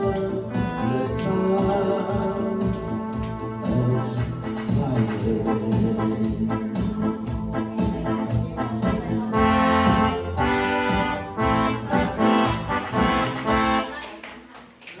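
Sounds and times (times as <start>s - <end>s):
held chords on reed instrument: 9.4s - 13.8s.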